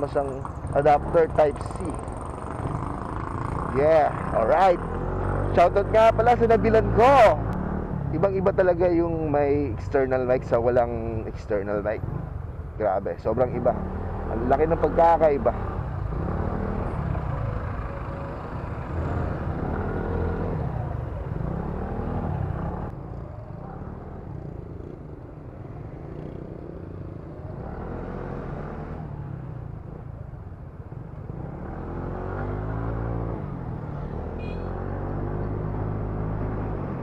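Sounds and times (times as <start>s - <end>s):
motorcycle engine accelerating: 13.6s - 22.9s.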